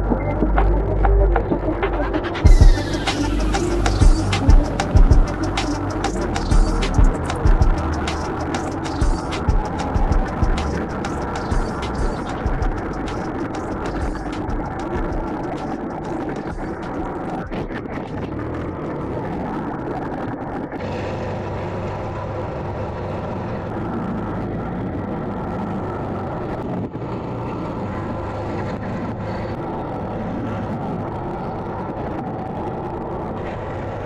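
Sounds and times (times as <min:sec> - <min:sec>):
riding noise: 0:00.0 - 0:34.0
quad bike engine running: 0:02.5 - 0:15.4.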